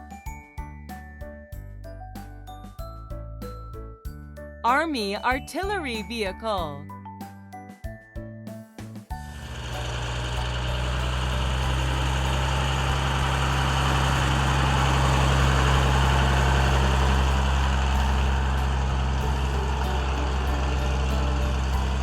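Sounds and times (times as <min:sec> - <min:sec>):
heavy vehicle engine idling: 0:09.2 - 0:22.0.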